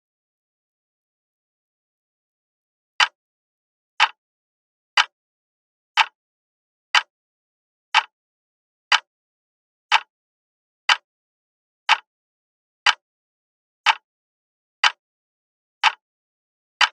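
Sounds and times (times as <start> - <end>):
alarm clock ticking: 5.0 - 5.2, 6.9 - 7.1, 7.9 - 8.1, 10.9 - 11.1, 12.8 - 13.0, 13.8 - 14.0, 15.8 - 16.0.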